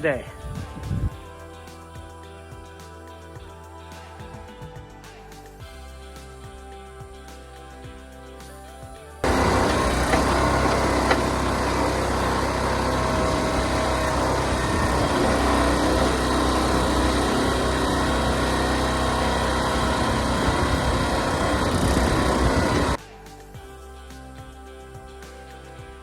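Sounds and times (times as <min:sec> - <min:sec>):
small engine running: 0:09.2 - 0:23.0.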